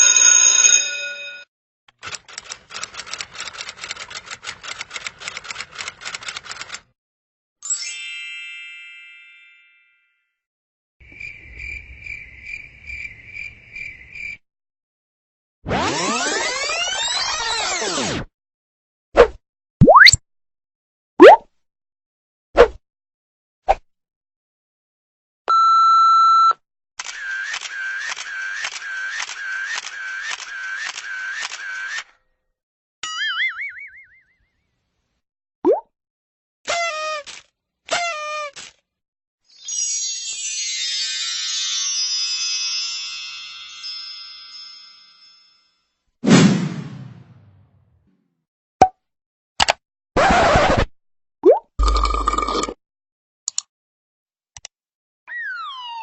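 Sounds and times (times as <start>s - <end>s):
typewriter bell ding: 0.0s - 2.5s
typewriter keys clacking: 1.9s - 6.8s.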